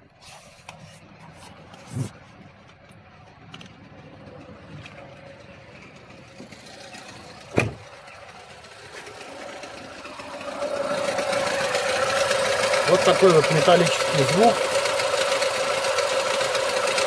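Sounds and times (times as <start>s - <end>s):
car engine idling with rattle: 0.5s - 17.0s
sharp thump: 7.5s - 7.8s.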